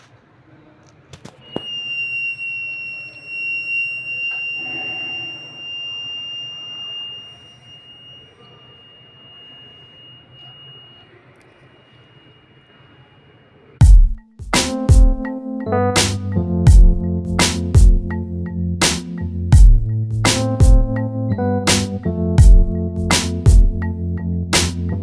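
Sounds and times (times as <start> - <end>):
high-pitched buzzer tone: 1.4 - 13.8.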